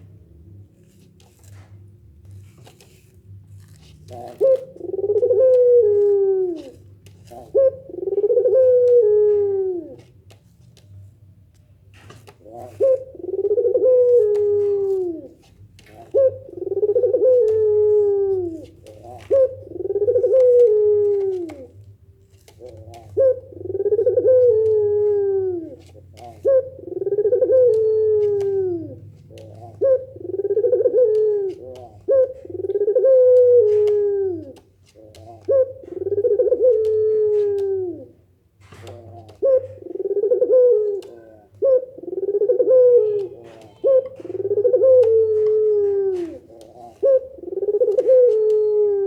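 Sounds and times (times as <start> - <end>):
doves cooing: 3.5 - 49.0.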